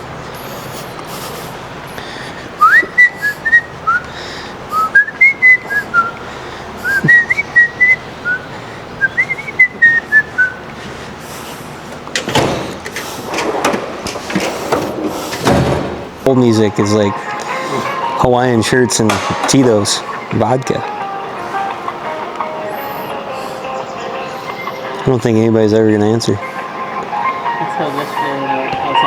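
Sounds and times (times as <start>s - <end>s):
person whistling a tune: 2.6s - 4.1s, 4.7s - 6.2s, 6.8s - 8.4s, 9.0s - 10.6s
clattering and knocking: 11.9s - 16.2s, 19.1s - 19.8s.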